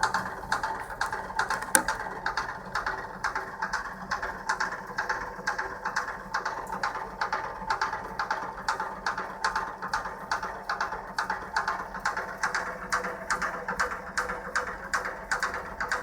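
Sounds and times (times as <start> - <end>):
boiler pump clicking rattle: 0.0 - 2.0
sharp click: 1.0 - 2.0.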